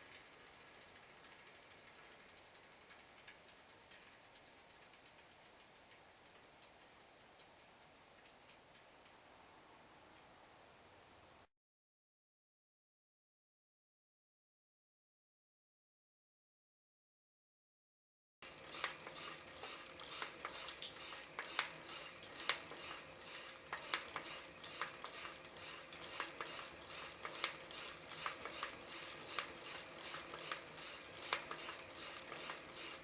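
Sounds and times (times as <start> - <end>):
bicycle wheel metallic clinks: 0.0 - 7.8, 18.4 - 33.0.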